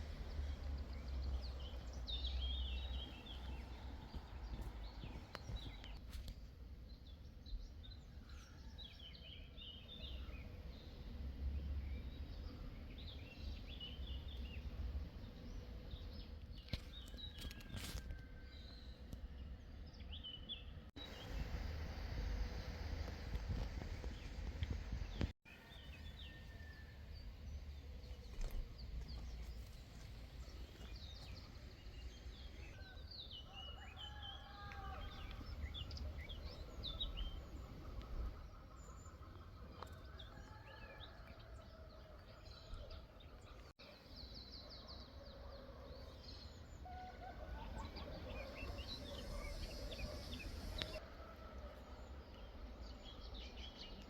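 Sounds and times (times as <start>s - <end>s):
low wind rumble: 20.8s - 25.4s.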